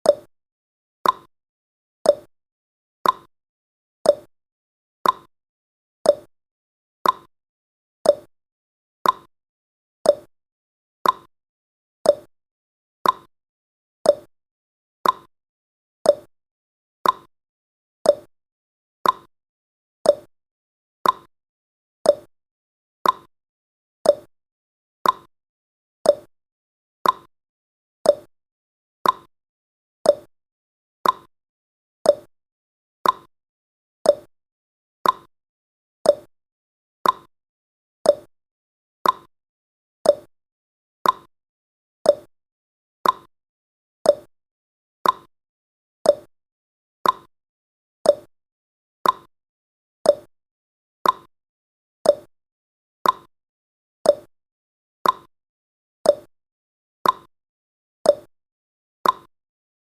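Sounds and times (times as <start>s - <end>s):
timer ticking: 1.0s - 1.3s, 2.1s - 2.3s, 3.0s - 3.3s, 4.1s - 4.3s, 5.0s - 5.3s, 6.1s - 6.3s, 7.0s - 7.3s, 8.1s - 8.3s, 9.0s - 9.3s, 10.1s - 10.3s, 11.0s - 11.3s, 12.1s - 12.3s, 13.0s - 13.3s, 14.1s - 14.3s, 15.0s - 15.3s, 16.1s - 16.3s, 17.0s - 17.3s, 18.1s - 18.3s, 19.0s - 19.3s, 20.1s - 20.3s, 21.0s - 21.3s, 22.1s - 22.3s, 23.0s - 23.3s, 24.0s - 24.3s, 25.0s - 25.3s, 26.0s - 26.3s, 27.0s - 27.3s, 28.0s - 28.3s, 29.0s - 29.3s, 30.0s - 30.3s, 31.0s - 31.3s, 32.1s - 32.3s, 33.0s - 33.3s, 34.1s - 34.3s, 35.0s - 35.3s, 36.1s - 36.3s, 37.0s - 37.3s, 38.1s - 38.3s, 39.0s - 39.3s, 40.0s - 40.3s, 41.0s - 41.3s, 42.1s - 42.3s, 43.0s - 43.3s, 44.1s - 44.3s, 45.0s - 45.3s, 46.1s - 46.3s, 47.0s - 47.3s, 48.1s - 48.3s, 49.0s - 49.3s, 50.1s - 50.3s, 51.0s - 51.3s, 52.1s - 52.3s, 53.0s - 53.3s, 54.1s - 54.3s, 55.0s - 55.3s, 56.1s - 56.3s, 57.0s - 57.3s, 58.1s - 58.3s, 59.0s - 59.3s.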